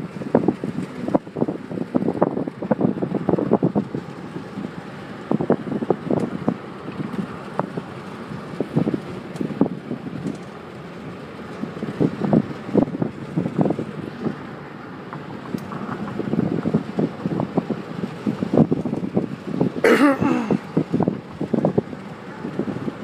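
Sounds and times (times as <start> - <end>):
road noise: 0.0 - 23.0
wind buffeting microphone: 0.0 - 23.0.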